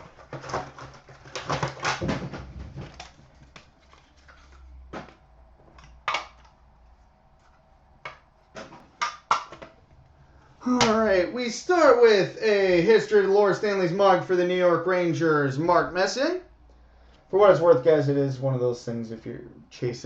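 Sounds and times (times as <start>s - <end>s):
card box rustling: 0.0s - 5.8s.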